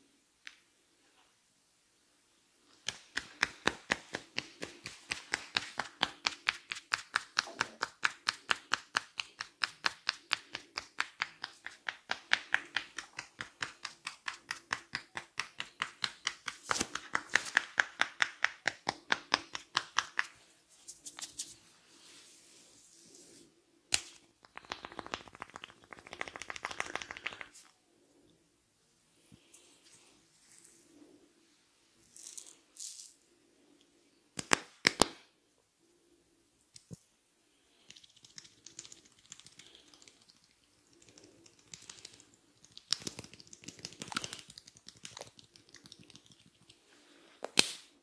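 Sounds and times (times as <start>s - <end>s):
hands tapping on head: 2.8s - 20.4s, 23.9s - 27.6s, 34.4s - 35.2s, 37.9s - 46.8s.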